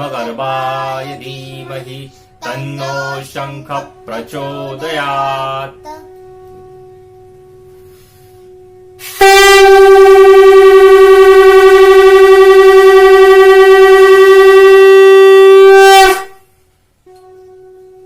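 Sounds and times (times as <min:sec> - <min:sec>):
steady held tone: 0:00.0 - 0:18.0
conch shell blown: 0:03.8 - 0:18.0.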